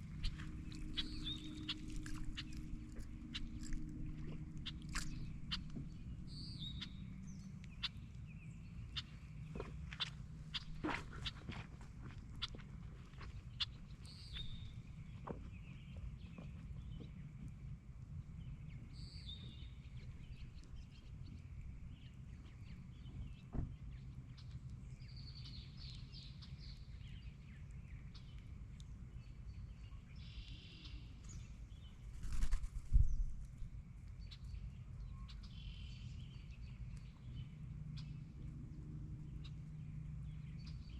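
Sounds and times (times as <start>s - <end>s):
songbirds chirping and trilling: 0.0s - 40.9s
steady low rumble: 0.0s - 40.9s.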